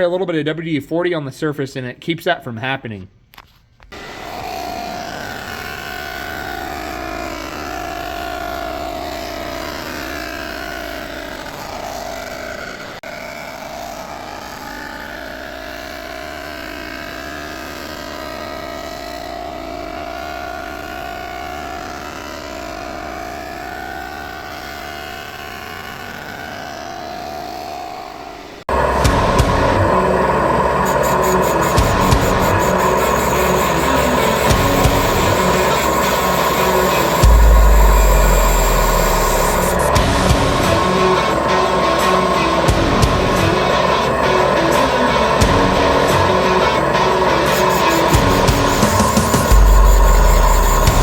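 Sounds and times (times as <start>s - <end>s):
loud abrupt sound: 3.9s - 15.8s, 26.2s - 51.0s
machine humming: 4.0s - 13.0s, 28.7s - 51.0s.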